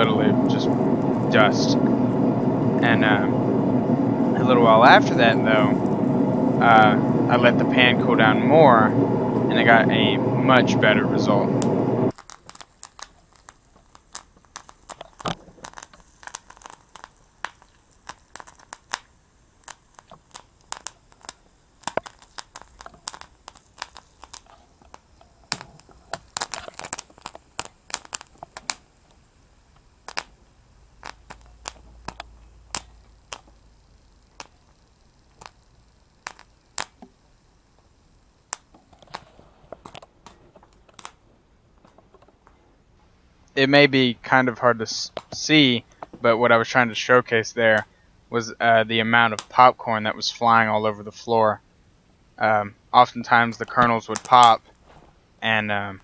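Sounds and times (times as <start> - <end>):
popcorn popping in a pan: 12.1 - 42.6, 49.0 - 50.6, 53.2 - 54.8.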